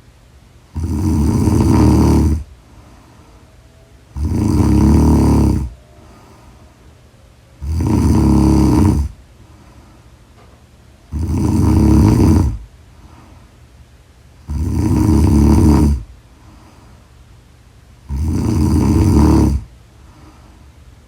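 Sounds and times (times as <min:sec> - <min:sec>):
woman snoring loudly: 0:00.7 - 0:02.5, 0:04.1 - 0:05.8, 0:07.6 - 0:09.2, 0:11.1 - 0:12.6, 0:14.4 - 0:16.1, 0:18.1 - 0:19.7.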